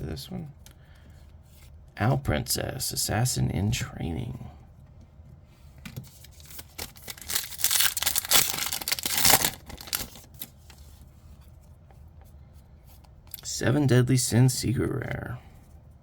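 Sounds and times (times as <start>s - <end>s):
foil wrapper tearing and crinkling: 6.1s - 10.7s.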